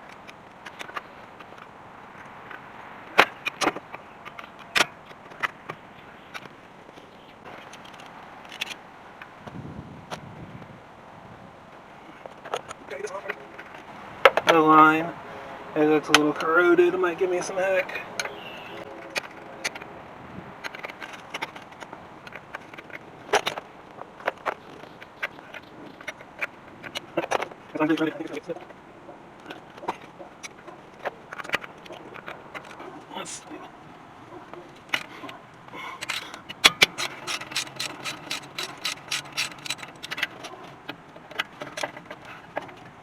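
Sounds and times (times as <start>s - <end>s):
hand tools clicking on brake parts: 0.0s - 10.2s, 12.1s - 14.6s, 17.4s - 19.9s, 20.6s - 33.6s, 34.3s - 43.0s
metal tools clinking: 34.8s - 40.5s.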